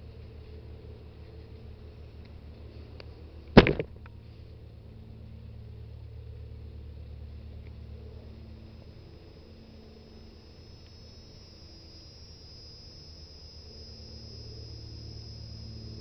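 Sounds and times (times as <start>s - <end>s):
low engine drone: 0.0s - 16.0s
sharp knock near microphone: 3.6s - 4.0s.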